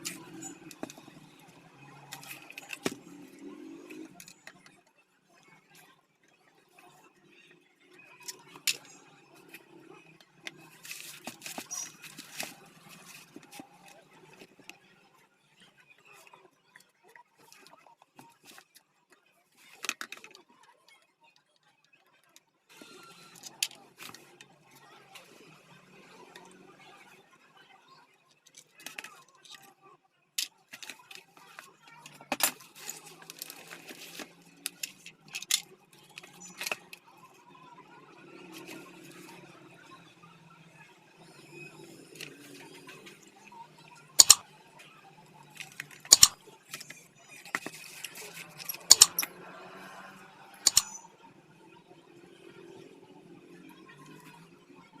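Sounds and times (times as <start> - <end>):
metal parts and tools clicking: 2.0 - 3.2, 3.9 - 4.8, 8.2 - 9.1, 30.4 - 37.0, 44.1 - 44.4, 45.5 - 49.5, 50.4 - 51.1
small hard parts clicking: 44.2 - 44.4, 45.5 - 49.3, 50.6 - 51.0.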